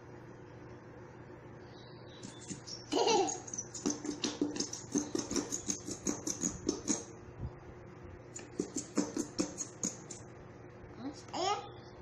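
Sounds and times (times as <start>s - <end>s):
glue bottle squirting and squeaking: 2.2s - 7.0s, 8.4s - 10.2s.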